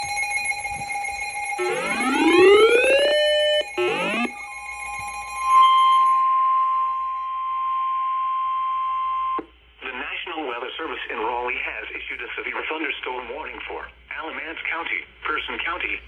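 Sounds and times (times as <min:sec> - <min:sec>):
siren-like wail: 0:01.6 - 0:04.3
steady single-pitch alert tone: 0:01.6 - 0:04.4.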